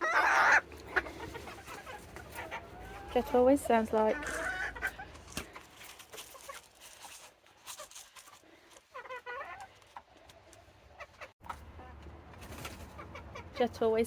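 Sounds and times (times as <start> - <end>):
hen strangled call: 0.0 - 3.4, 4.0 - 5.2.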